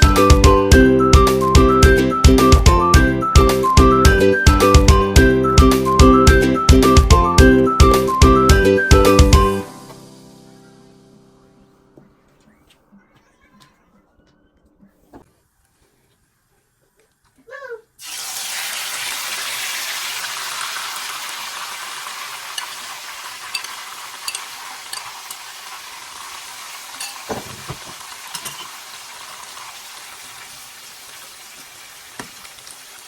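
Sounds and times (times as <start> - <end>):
hot oil sizzling: 0.0 - 0.3, 18.0 - 33.0
utensil knocking: 23.5 - 25.5, 27.0 - 28.7.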